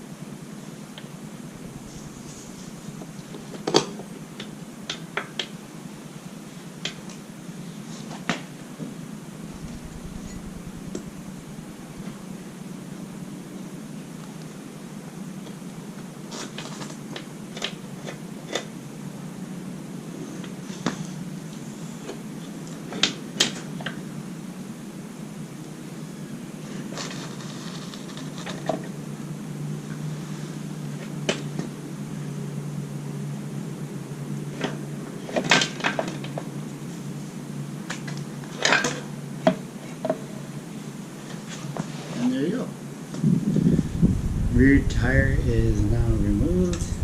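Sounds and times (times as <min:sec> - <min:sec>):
steady low hum: 0:00.0 - 0:04.9, 0:09.0 - 0:16.3, 0:42.8 - 0:47.0.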